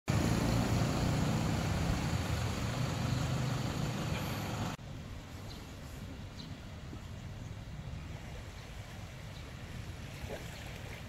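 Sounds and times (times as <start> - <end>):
engine humming: 0.1 - 4.8
outdoor hiss: 0.1 - 7.0.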